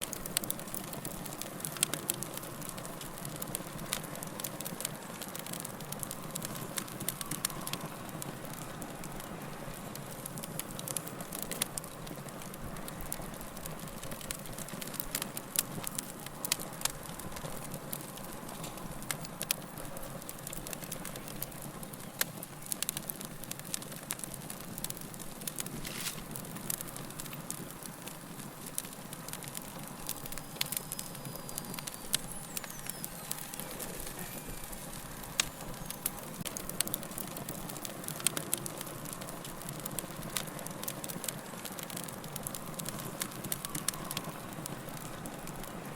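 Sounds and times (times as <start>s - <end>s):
fire crackling and popping: 0.0s - 45.9s
soft hiss: 25.4s - 37.8s.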